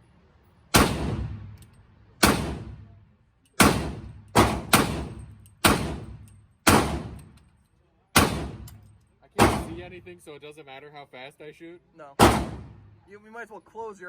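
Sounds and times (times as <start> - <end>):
rifle gunshots: 0.7 - 1.6, 2.2 - 2.9, 3.6 - 7.3, 8.2 - 8.7, 9.4 - 9.9, 12.2 - 12.9.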